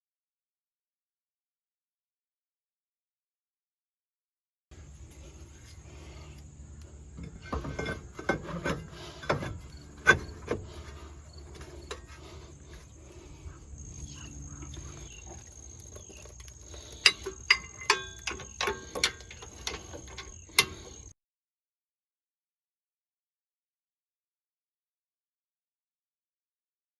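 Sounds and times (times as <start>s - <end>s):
metal tools clinking: 7.1s - 13.3s, 14.4s - 21.1s.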